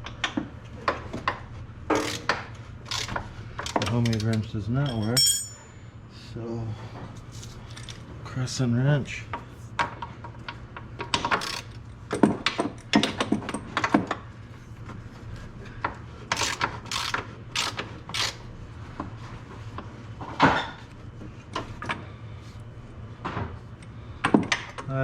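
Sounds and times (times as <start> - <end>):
low steady hum: 0.0 - 25.0
wrench clanking on bolt: 11.2 - 11.8.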